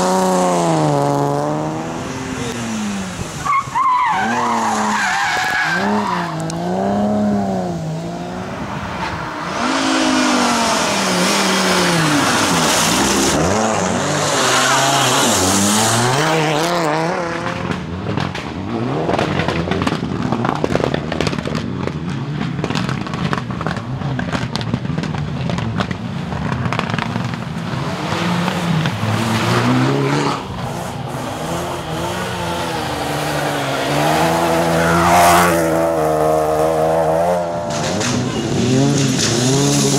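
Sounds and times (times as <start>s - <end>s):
rally car engine revving: 0.0s - 39.9s.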